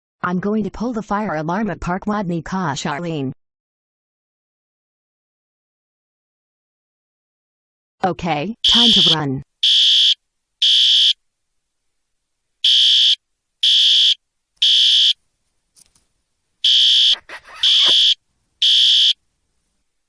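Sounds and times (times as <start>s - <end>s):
fire alarm beeping: 8.6s - 11.2s, 12.6s - 15.2s, 16.6s - 19.2s.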